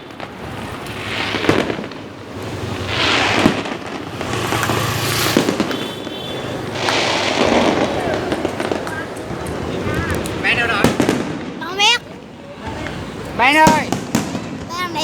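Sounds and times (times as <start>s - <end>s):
fireworks crackling and hissing: 0.0s - 15.0s
sharp pops: 1.6s - 12.0s.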